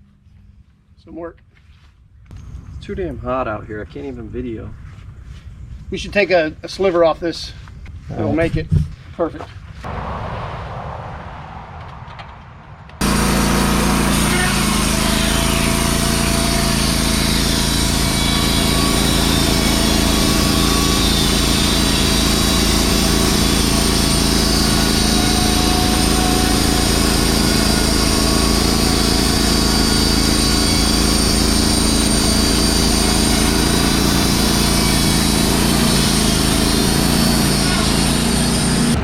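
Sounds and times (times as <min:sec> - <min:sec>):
band sawmill cutting log: 0:13.0 - 0:39.0.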